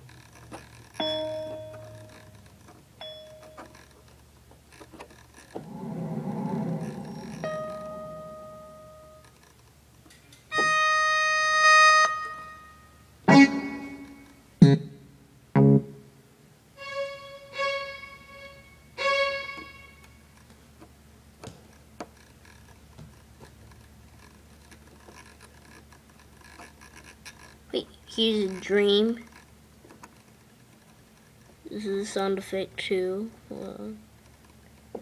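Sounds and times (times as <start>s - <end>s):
keyboard test notes: 1.0s - 3.9s, 5.6s - 9.4s, 10.5s - 15.0s, 15.6s - 16.1s, 16.8s - 20.2s.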